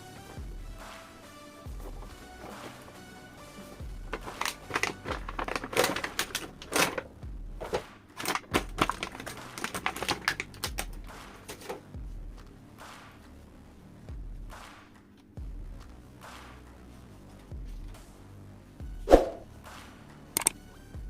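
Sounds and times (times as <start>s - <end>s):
packaging handled: 4.0s - 11.8s
plastic toy parts clicking: 4.1s - 7.0s, 20.4s - 20.6s.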